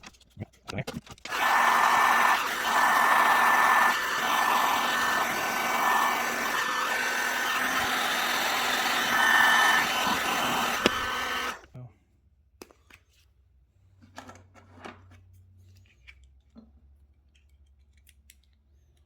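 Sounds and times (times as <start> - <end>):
power tool whirring: 1.3 - 11.7.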